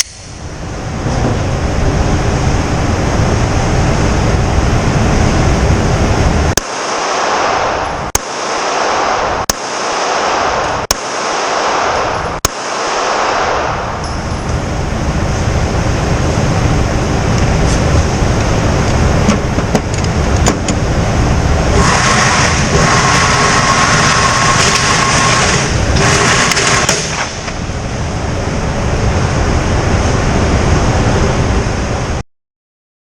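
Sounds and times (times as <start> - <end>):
loud rushing noise: 0.0 - 32.2
pistol shots: 6.6 - 14.0, 26.2 - 27.5.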